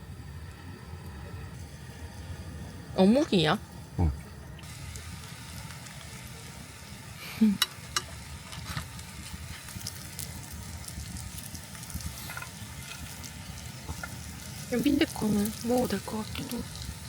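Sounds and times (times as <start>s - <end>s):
food sizzling in a pan: 4.6s - 17.0s.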